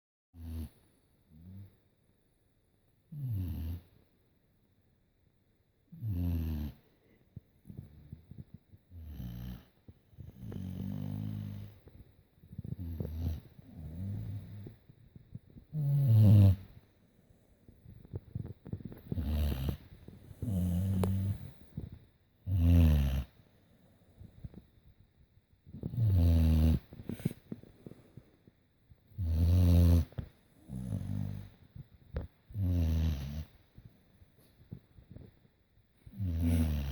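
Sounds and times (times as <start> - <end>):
dog snoring: 0.4 - 1.7, 3.1 - 3.9, 5.9 - 6.9, 7.6 - 14.8, 15.4 - 16.8, 18.0 - 23.4, 25.7 - 28.1, 29.1 - 31.6, 32.2 - 33.6, 36.0 - 36.9.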